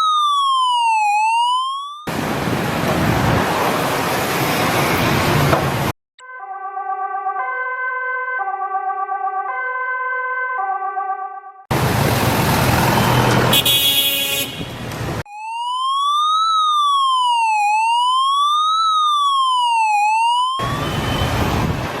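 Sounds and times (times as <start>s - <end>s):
electronic siren wailing: 0.0s - 3.5s, 15.3s - 21.9s
loud noisy horn blast: 13.0s - 15.0s.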